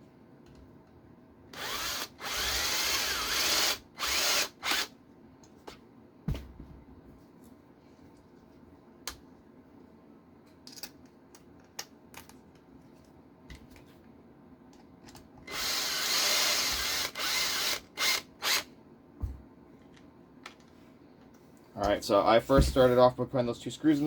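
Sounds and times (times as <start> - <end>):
power driver running a screw: 1.6 - 4.9, 15.5 - 18.7
clicks of small parts handled: 10.5 - 13.9.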